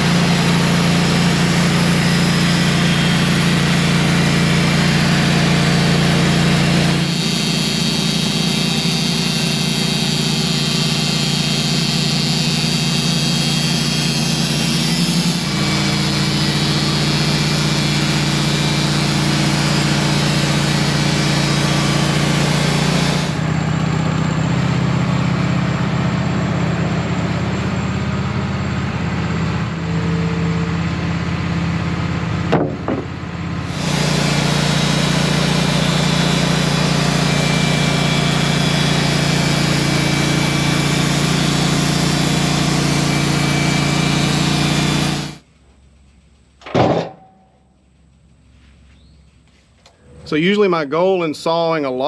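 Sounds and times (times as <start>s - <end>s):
sawmill engine running: 0.0s - 45.5s
knock: 32.5s - 33.1s.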